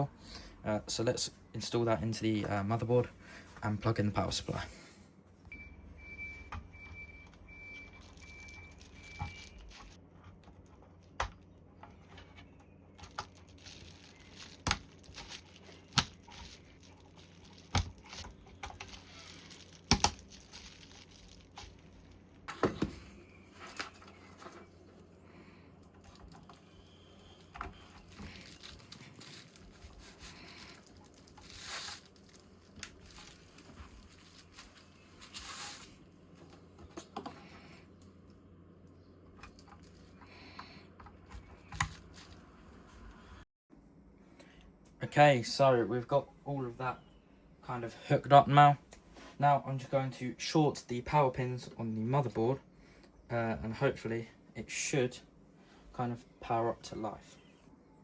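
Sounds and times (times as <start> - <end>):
rustling and handling noise: 0.4 - 38.5, 39.1 - 43.2.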